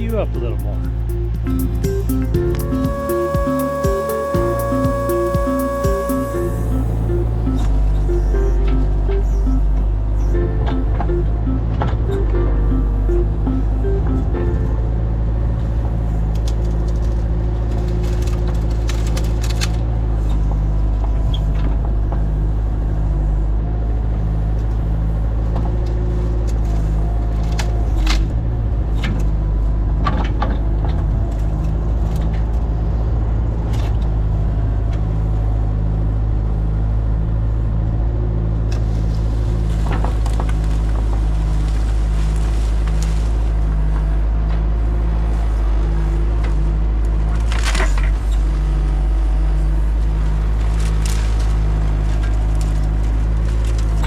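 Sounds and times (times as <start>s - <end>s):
large engine running steadily: 0.0s - 54.0s.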